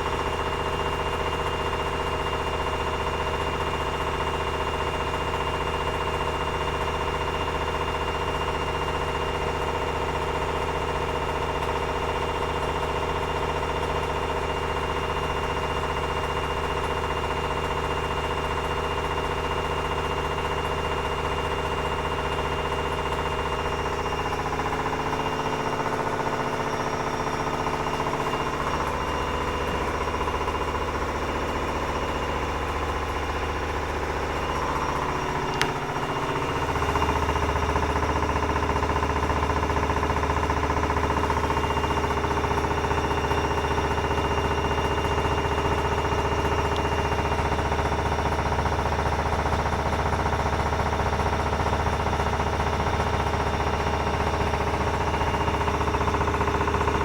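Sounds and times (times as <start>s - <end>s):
washing machine spinning: 0.0s - 57.0s
knocking inside washing machine: 16.0s - 57.0s.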